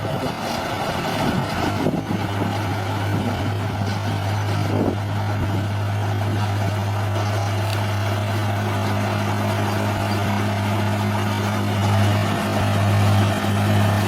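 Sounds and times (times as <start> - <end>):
bulldozer diesel engine running: 0.0 - 14.0.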